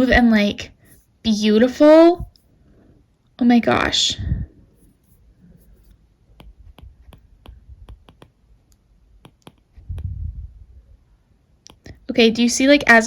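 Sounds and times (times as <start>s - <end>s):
stylus tip tapping on glass screen: 6.4s - 8.4s, 9.2s - 9.7s.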